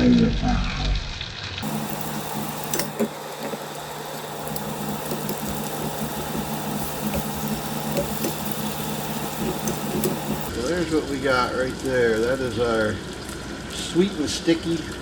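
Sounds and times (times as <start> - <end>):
chicken wings sizzling in sauce: 1.6 - 10.6.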